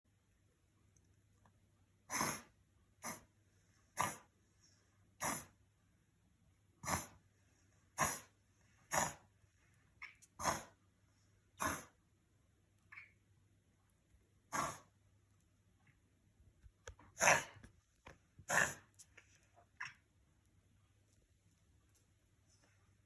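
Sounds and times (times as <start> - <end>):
dog reverse sneezing: 2.1 - 3.2.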